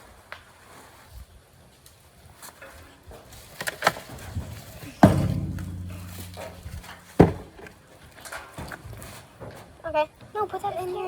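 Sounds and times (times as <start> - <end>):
loud thump: 5.0 - 7.5
low ringing hum: 5.0 - 7.5
sharp knock: 5.0 - 7.5.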